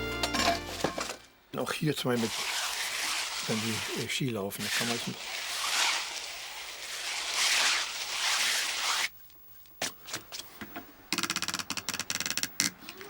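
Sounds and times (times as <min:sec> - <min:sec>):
skis swishing on snow: 0:02.0 - 0:09.2.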